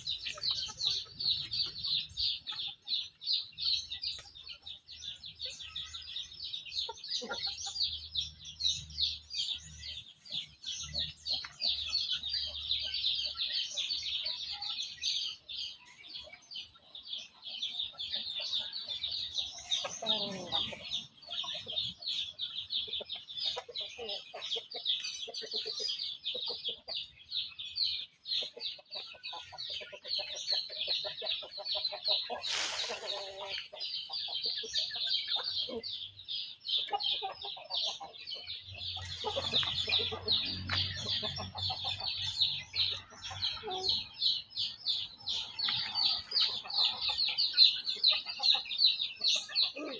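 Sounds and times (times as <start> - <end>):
chickens clucking: 0.0 - 49.9
chickens peeping: 0.0 - 49.9.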